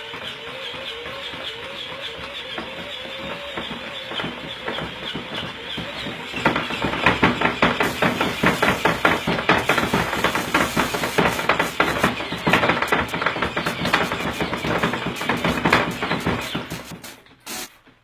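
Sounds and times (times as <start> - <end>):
rapid patting slaps: 3.6 - 17.8.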